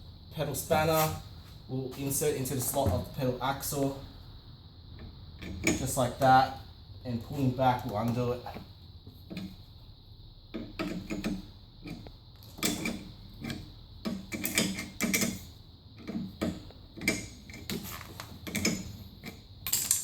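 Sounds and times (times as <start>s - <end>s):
metallic clicks and clanks of spanner: 10.6s - 17.8s, 18.4s - 20.0s.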